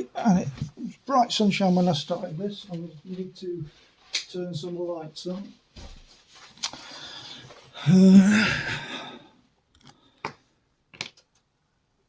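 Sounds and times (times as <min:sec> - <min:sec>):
rustling and scraping: 0:00.6 - 0:06.7.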